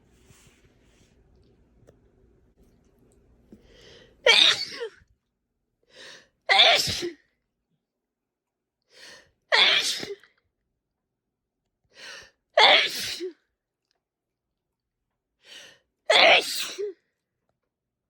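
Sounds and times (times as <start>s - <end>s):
person sneezing: 4.2s - 5.0s, 6.5s - 7.2s, 9.5s - 10.2s.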